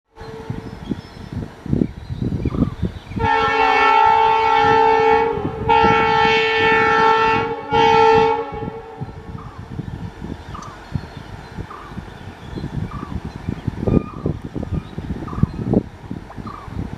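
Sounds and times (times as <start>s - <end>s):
locomotive air horn blasts: 0.2s - 0.8s, 3.2s - 9.4s.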